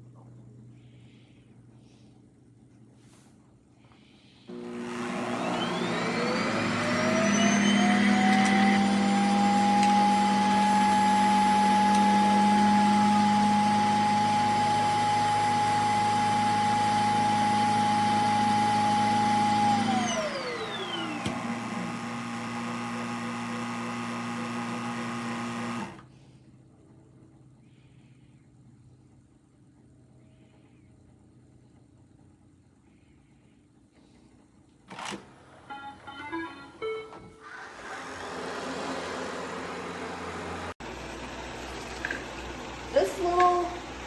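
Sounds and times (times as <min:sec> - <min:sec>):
vacuum motor whine: 0:04.5 - 0:26.1, 0:37.4 - 0:44.0.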